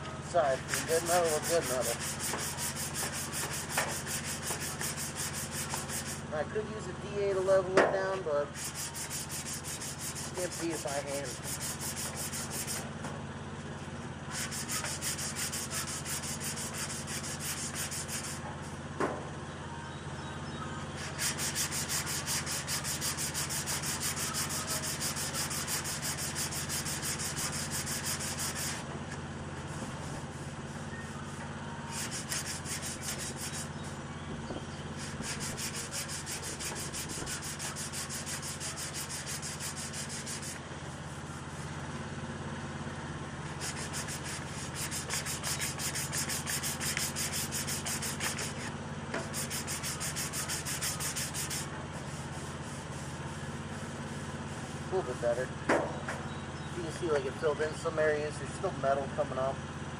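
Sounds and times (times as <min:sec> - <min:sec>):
sandpaper scratching on filler: 0:00.4 - 0:06.3, 0:08.4 - 0:12.8, 0:14.3 - 0:18.5, 0:21.0 - 0:28.9, 0:29.6 - 0:34.0, 0:34.9 - 0:41.7, 0:43.4 - 0:55.5.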